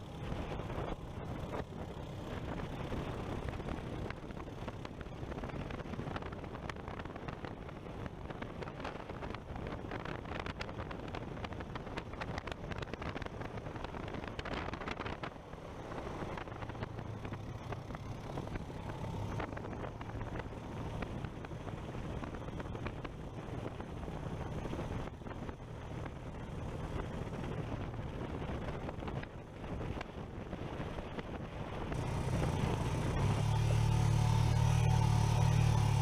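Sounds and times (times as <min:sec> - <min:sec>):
wind noise on microphone: 0:00.1 - 0:36.0
engine running: 0:11.5 - 0:36.0.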